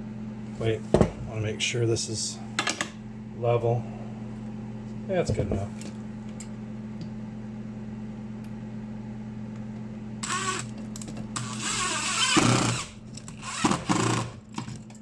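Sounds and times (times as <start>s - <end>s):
steady low hum: 0.0s - 15.0s
power drill driving a screw: 10.2s - 10.7s, 11.4s - 14.4s.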